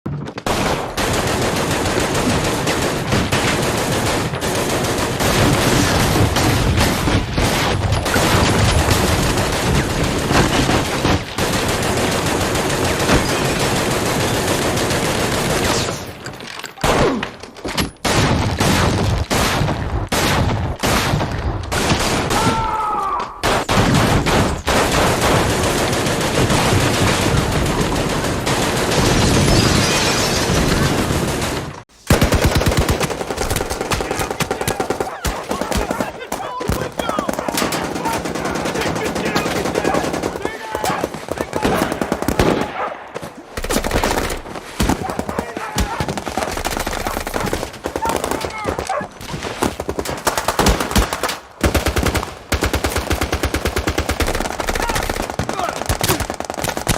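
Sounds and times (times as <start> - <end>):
automatic gunfire: 0.4 - 16.0, 23.4 - 29.7, 30.5 - 56.9.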